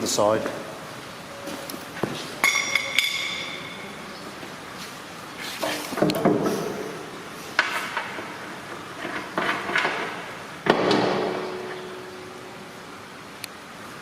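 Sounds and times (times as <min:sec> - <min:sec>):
metal clanks and knocks: 0:09.0 - 0:11.9.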